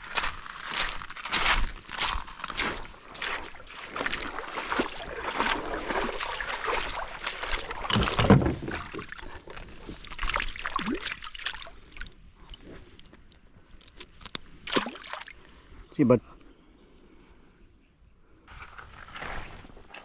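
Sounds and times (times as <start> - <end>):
water splashing around a kayak: 0.0 - 15.8.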